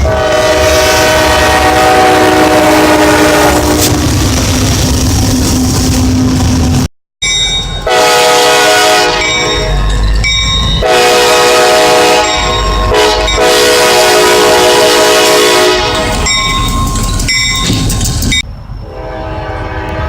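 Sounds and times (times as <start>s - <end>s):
locomotive air horn blasts: 0.0s - 4.2s, 7.8s - 9.8s, 10.8s - 16.5s, 18.8s - 20.0s
low rumble of passing train: 0.0s - 20.0s.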